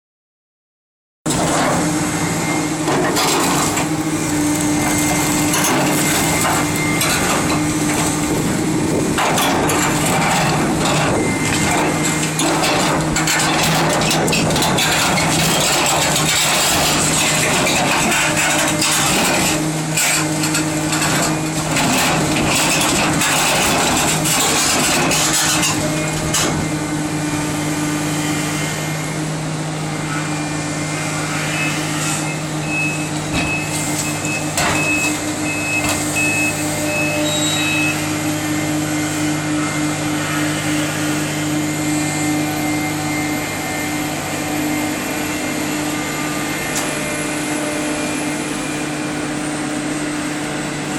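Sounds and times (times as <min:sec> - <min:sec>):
excavator diesel engine running: 0:01.3 - 0:50.9
backup alarm beeping: 0:31.5 - 0:38.2.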